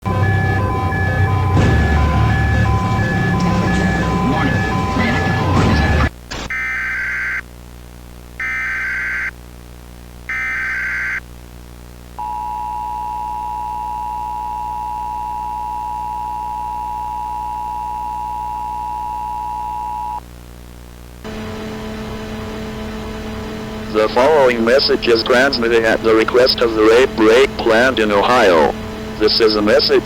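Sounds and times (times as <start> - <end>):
data bursts: 0.0 - 7.4, 10.3 - 11.2, 23.9 - 30.0
two-tone attention signal: 0.0 - 7.4, 12.2 - 20.2.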